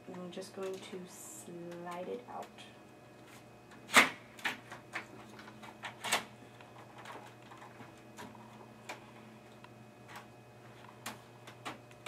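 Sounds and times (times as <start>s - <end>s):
computer parts clicking and knocking: 3.7s - 9.0s.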